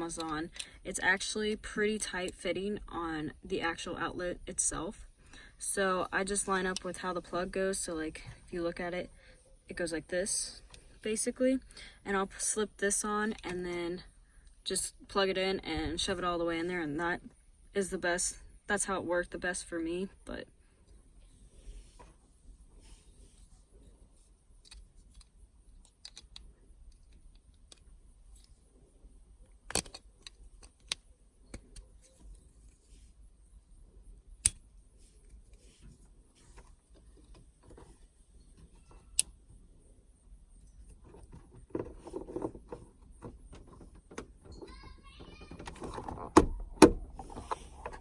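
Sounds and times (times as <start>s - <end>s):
sharp plastic clicks: 29.5s - 32.4s
rustling and fumbling: 40.5s - 48.0s.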